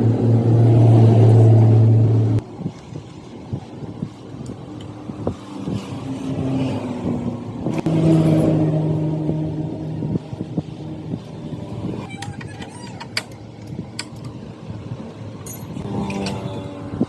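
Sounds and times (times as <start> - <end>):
sharp metallic clicks: 12.2 - 14.4.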